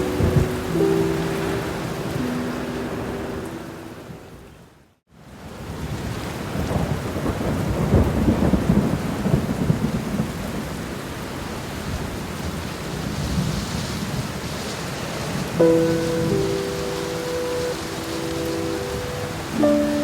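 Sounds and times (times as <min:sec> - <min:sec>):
thunder rumbling: 0:00.0 - 0:03.2, 0:06.5 - 0:10.7, 0:11.9 - 0:20.0
steady rain: 0:00.0 - 0:20.0.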